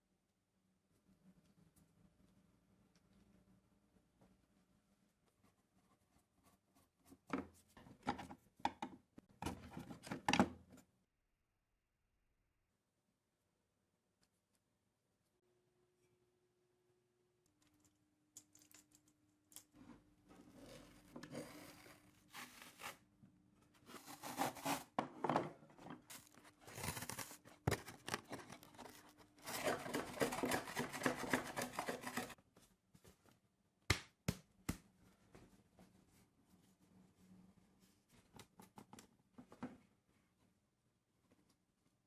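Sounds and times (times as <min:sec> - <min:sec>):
scraping and tearing on wood: 0:28.3 - 0:32.4.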